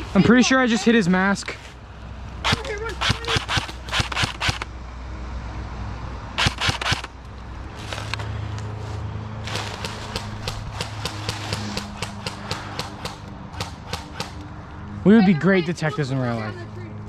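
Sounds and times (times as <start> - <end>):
airsoft guns firing: 2.4 - 4.7, 6.4 - 7.1, 9.5 - 14.4
rustling: 7.7 - 12.8.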